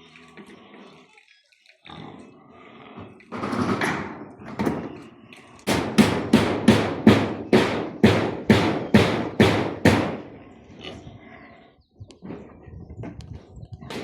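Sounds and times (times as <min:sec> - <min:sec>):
sharp blows or thuds: 0:05.7 - 0:10.3.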